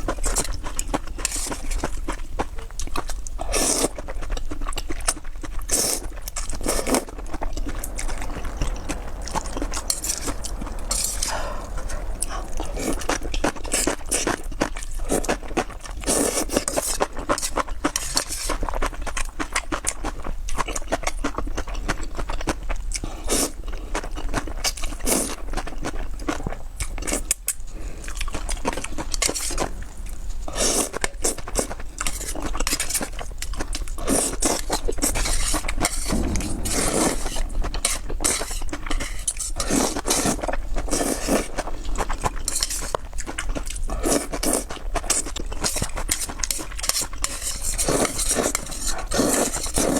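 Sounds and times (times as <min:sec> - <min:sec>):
wet chewing and crunching: 0:37.7 - 0:49.9.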